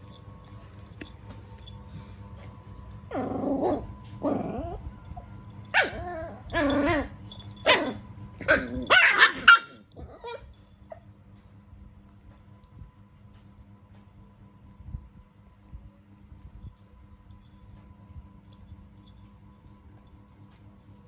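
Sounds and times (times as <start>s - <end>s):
puppies barking and growling: 0.0s - 11.2s.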